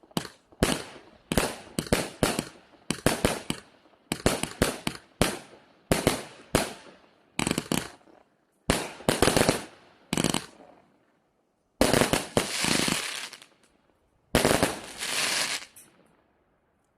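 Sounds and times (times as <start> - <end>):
fireworks shots and crackle: 0.0 - 10.8, 11.8 - 13.7, 14.3 - 16.0.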